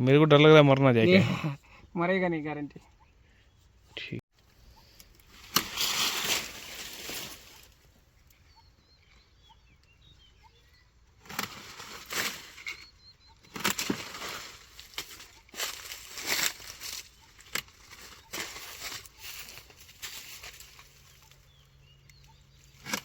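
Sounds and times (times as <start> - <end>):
leafy branches rustling: 4.5 - 8.4, 11.1 - 23.0
branch snapping: 5.4 - 7.6, 13.5 - 19.1.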